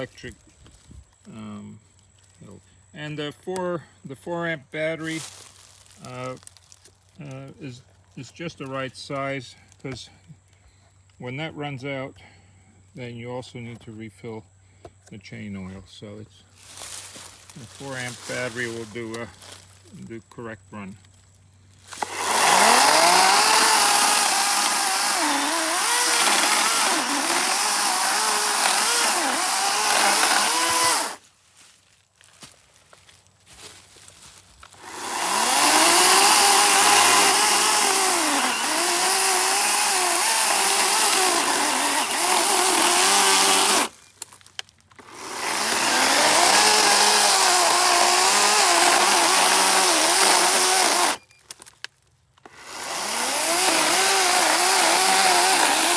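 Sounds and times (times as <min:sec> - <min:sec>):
electric chainsaw cutting wood: 0:21.8 - 0:31.2, 0:34.7 - 0:44.0, 0:45.0 - 0:51.2, 0:52.4 - 0:55.9.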